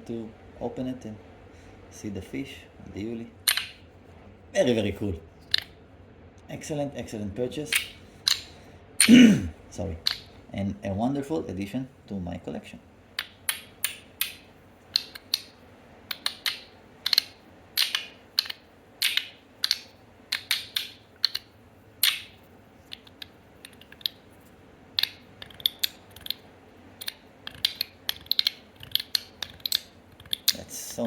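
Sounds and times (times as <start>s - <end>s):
metal fidget slider clicking: 16.1s - 22.3s, 27.0s - 30.6s.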